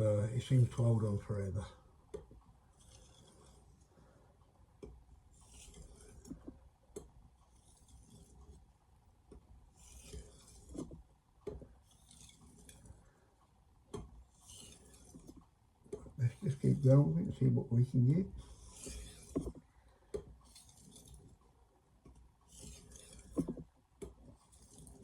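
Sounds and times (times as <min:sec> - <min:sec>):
knife rasping on sharpening plate: 0:02.8 - 0:03.8, 0:05.4 - 0:06.4, 0:09.8 - 0:10.9, 0:11.9 - 0:12.9, 0:14.4 - 0:15.4, 0:18.4 - 0:19.5, 0:20.5 - 0:21.3, 0:22.5 - 0:23.6, 0:24.5 - 0:25.0.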